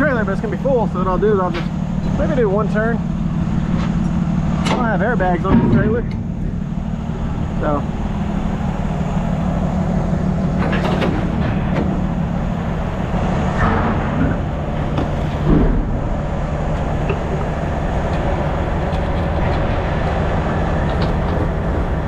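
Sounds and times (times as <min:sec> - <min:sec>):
diesel truck engine idling: 0:00.0 - 0:22.0
metal clanks and knocks: 0:03.6 - 0:06.9, 0:10.4 - 0:22.0.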